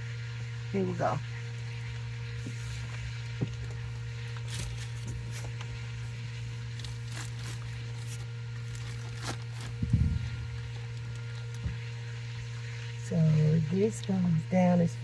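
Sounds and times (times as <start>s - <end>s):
steady low hum: 0.0s - 15.0s
fabric rustling and scraping: 2.4s - 3.2s, 4.3s - 10.6s
low bump: 9.8s - 10.6s.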